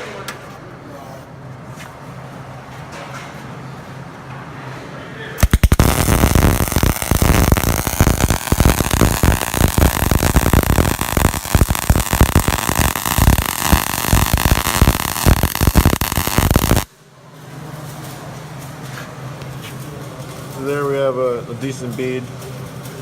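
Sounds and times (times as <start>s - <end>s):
welding arc crackling: 5.4s - 16.9s.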